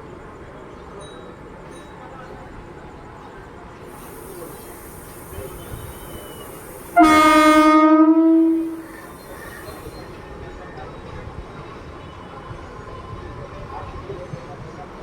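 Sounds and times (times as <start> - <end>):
train running rumble: 3.6 - 15.0
train horn blast: 4.0 - 9.6.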